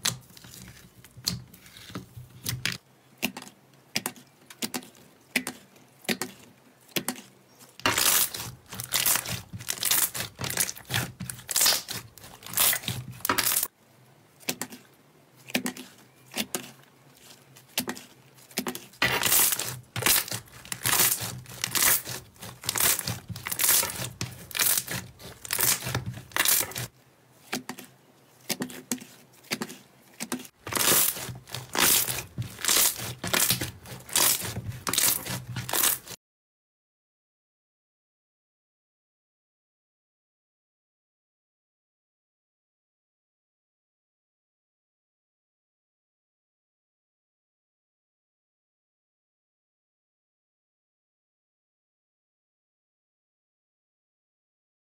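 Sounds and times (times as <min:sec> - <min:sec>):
slime squished by hand: 0:00.0 - 0:13.7, 0:15.5 - 0:26.9.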